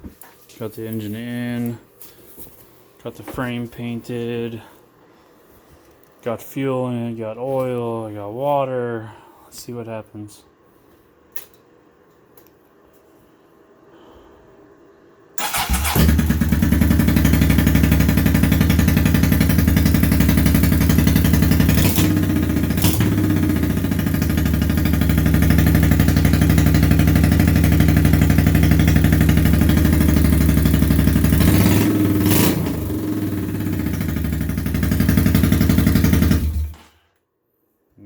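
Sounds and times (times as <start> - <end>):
motorcycle engine starting and running: 15.4 - 37.0.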